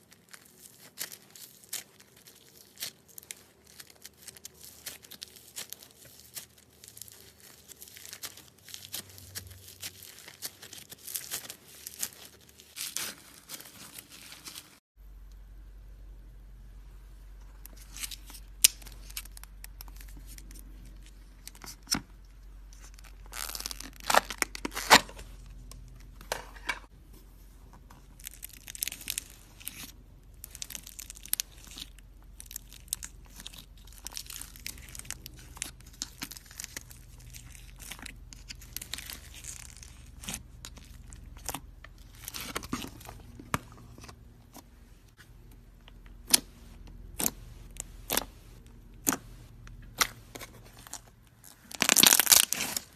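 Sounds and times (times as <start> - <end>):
slime squeezed by hand crackling: 51.4 - 52.9.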